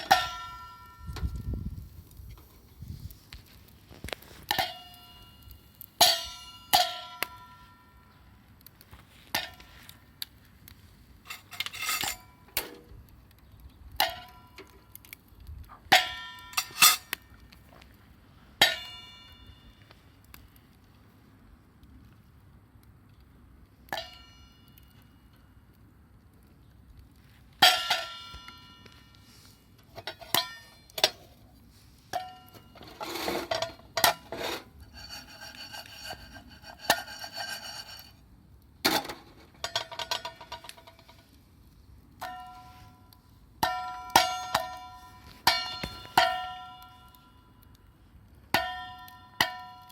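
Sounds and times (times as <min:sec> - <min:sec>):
metal cookware clinking: 0:11.3 - 0:12.7, 0:16.0 - 0:17.2.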